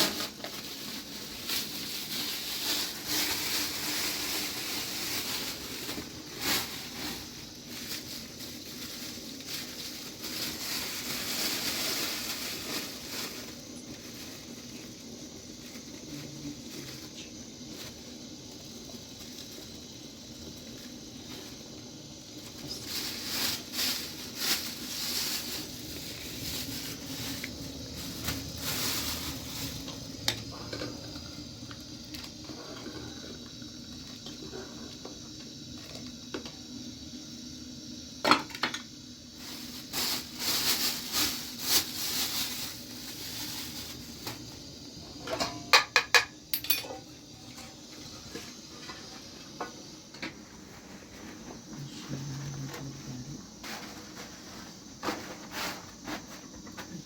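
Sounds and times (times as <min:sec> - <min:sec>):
scraping and rustling: 0:00.0 - 0:18.1, 0:22.4 - 0:33.1, 0:39.4 - 0:44.6.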